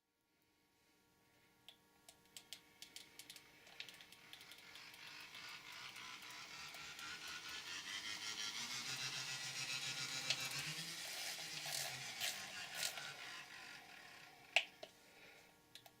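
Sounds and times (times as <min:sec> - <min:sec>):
low motor hum: 0:03.6 - 0:15.4.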